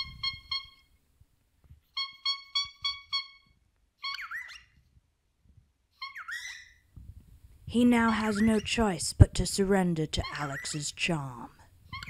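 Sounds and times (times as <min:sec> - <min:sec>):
cockatiel honking: 0:00.0 - 0:00.9, 0:01.9 - 0:04.7, 0:06.0 - 0:06.7
cockatiel squawking: 0:00.0 - 0:00.9, 0:01.9 - 0:03.4, 0:04.0 - 0:04.7, 0:06.0 - 0:06.8.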